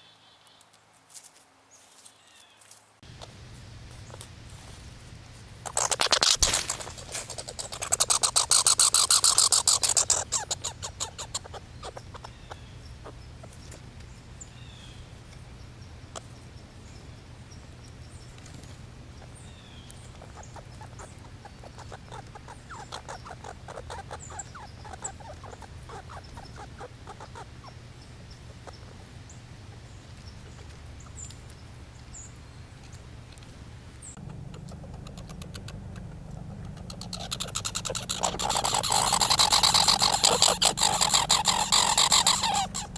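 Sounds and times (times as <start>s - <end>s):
steady low hum: 3.0s - 42.9s
squirrel chattering: 5.6s - 15.0s, 19.2s - 32.2s, 34.0s - 42.9s.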